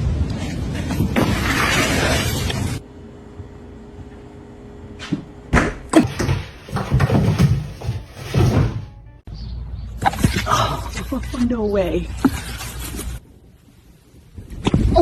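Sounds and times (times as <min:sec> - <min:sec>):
dull thumps and bumps: 0:06.0 - 0:09.1.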